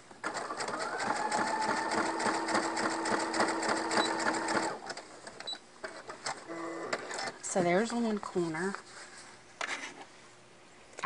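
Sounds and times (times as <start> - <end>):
sewing machine stitching: 0.2 - 5.0.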